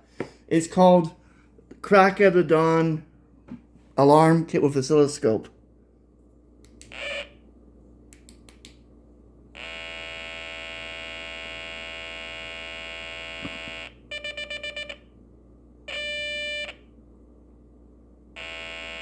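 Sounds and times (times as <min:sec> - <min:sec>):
electronic alarm tone and beeps: 0:09.6 - 0:15.0, 0:15.9 - 0:16.8, 0:18.4 - 0:19.0.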